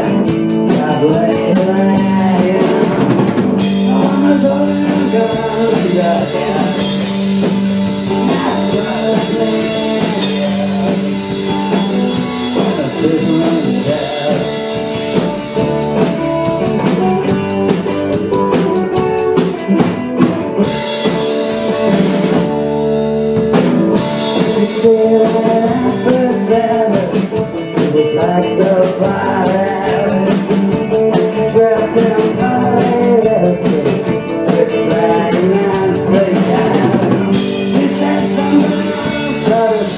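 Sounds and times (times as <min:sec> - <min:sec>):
person singing: 0:00.0 - 0:15.0, 0:24.2 - 0:39.9
drum kit beat: 0:00.0 - 0:39.9
guitar: 0:00.0 - 0:39.9
live band playing: 0:00.0 - 0:39.9.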